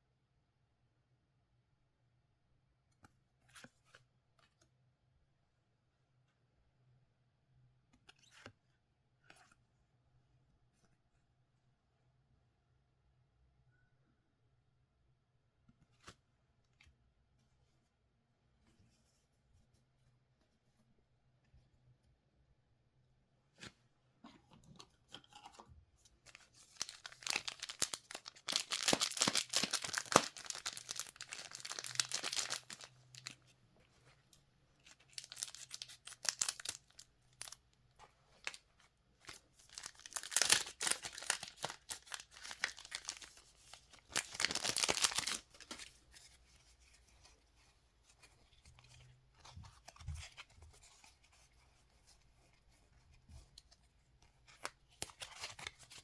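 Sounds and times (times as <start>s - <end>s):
wrappers tearing and crinkling: 26.3s - 33.4s, 35.1s - 37.6s, 39.2s - 45.8s.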